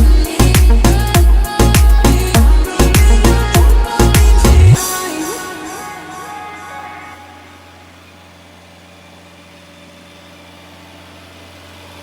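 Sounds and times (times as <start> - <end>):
background music: 0.0 - 7.8
paver engine idling: 0.0 - 12.0.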